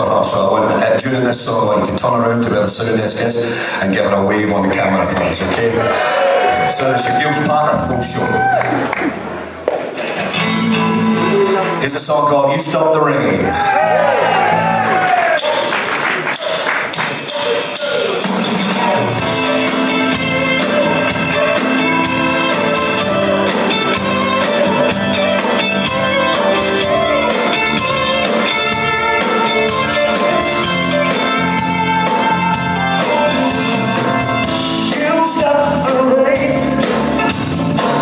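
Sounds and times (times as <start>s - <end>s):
bass guitar: 0.0s - 16.5s, 17.3s - 38.0s
electric guitar melody: 10.0s - 11.8s, 17.3s - 38.0s
steady drum beat: 15.3s - 38.0s.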